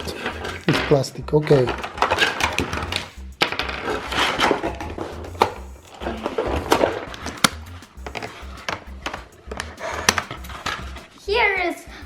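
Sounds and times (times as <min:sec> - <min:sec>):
plastic parts clicking: 0:00.0 - 0:11.0
plastic toy parts handling: 0:00.0 - 0:11.0.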